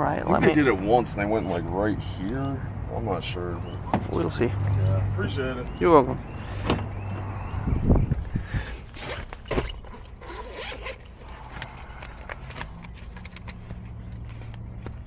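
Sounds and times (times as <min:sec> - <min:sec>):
zip-like rasp: 0:08.9 - 0:09.4, 0:10.2 - 0:11.4
gear scraping and clicking: 0:08.9 - 0:15.0.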